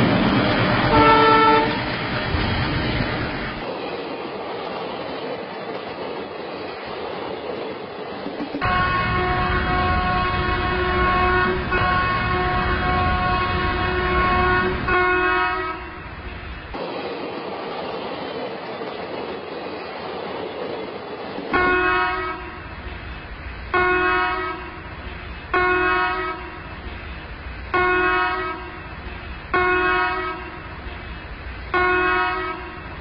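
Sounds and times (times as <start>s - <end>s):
steady rushing noise: 0.0s - 21.6s
train horn blasts: 0.8s - 1.9s, 8.6s - 16.0s, 21.6s - 22.7s, 23.8s - 24.9s, 25.5s - 26.7s, 27.7s - 28.8s, 29.5s - 30.6s, 31.7s - 32.8s.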